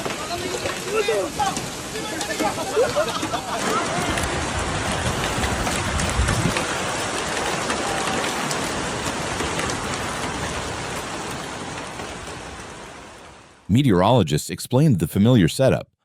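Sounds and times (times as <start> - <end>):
hail and rain falling: 0.0 - 13.6
hailstones ticking on surfaces: 0.0 - 13.6.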